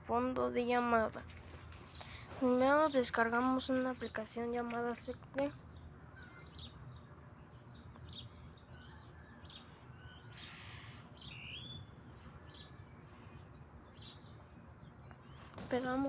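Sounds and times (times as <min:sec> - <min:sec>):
faint bird chirps: 0:04.8 - 0:16.0.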